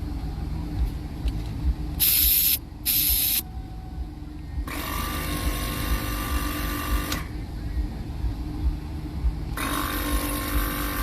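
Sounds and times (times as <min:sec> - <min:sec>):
steady hiss with whine: 0:00.0 - 0:04.7
air hissing bursts: 0:02.0 - 0:03.4.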